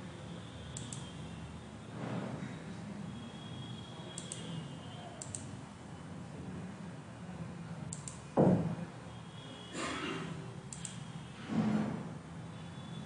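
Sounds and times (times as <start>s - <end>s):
computer mouse clicking: 0.8s - 1.1s, 4.2s - 4.5s, 5.2s - 5.5s, 7.9s - 8.3s, 10.7s - 11.0s
loud thump: 8.4s - 8.8s.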